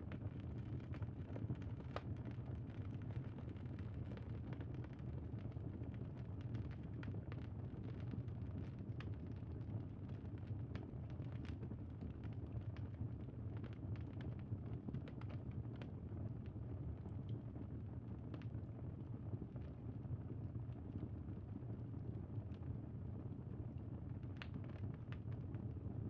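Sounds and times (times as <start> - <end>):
fire pops and snaps: 24.3 - 25.6.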